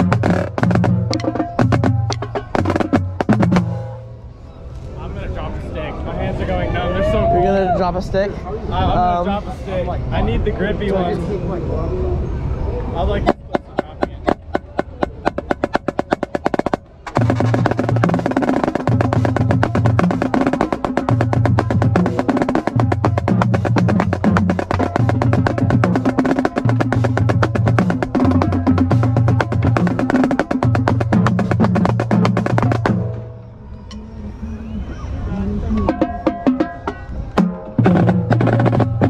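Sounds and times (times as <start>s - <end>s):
marching snare drum rolls: 0.0s - 3.9s, 13.3s - 33.3s, 35.9s - 39.0s.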